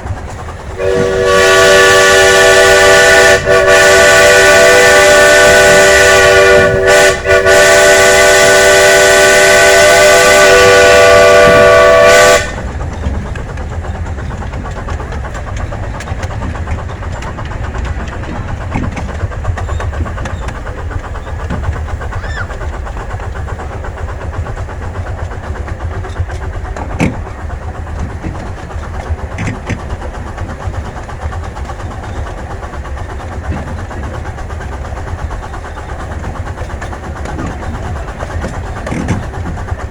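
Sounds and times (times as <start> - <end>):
train rumbling along track: 0.0 - 39.9
steam locomotive whistle: 0.8 - 12.7.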